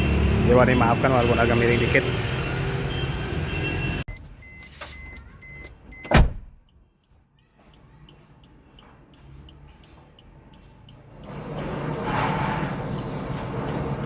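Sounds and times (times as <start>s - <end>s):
car door shutting thud: 6.0s - 6.6s.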